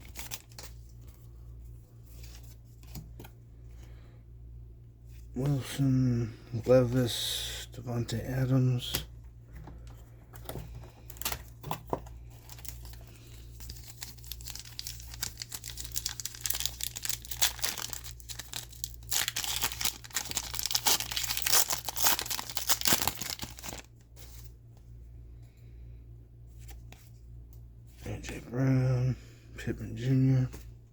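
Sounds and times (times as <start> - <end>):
card wrappers torn and crinkled: 0.0 - 0.9, 10.9 - 24.0.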